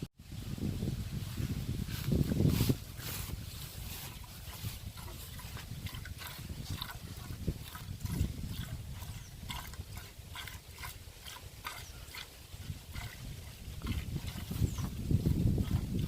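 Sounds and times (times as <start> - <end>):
milk squirting into a pail: 4.2 - 16.0.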